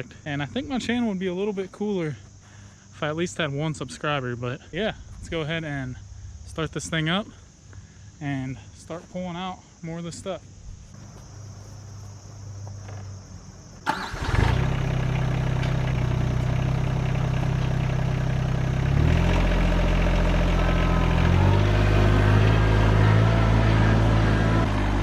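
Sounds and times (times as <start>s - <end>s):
tractor engine running: 11.0s - 25.0s
tractor engine cranking: 13.8s - 25.0s.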